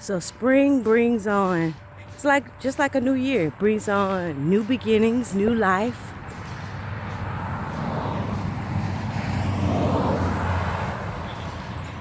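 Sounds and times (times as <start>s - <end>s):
vehicle passing by: 4.7s - 12.0s.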